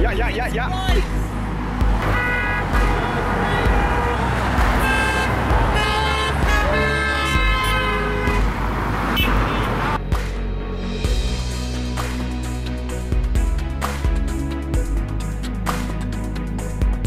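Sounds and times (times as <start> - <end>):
passing road traffic: 0.0 - 17.0
car horns honking: 1.9 - 10.0.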